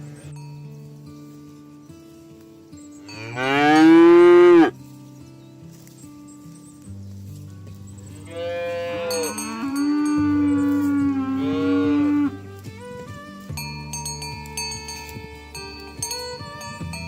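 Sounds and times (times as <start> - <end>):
cow mooing: 3.1 - 4.8, 8.2 - 12.4.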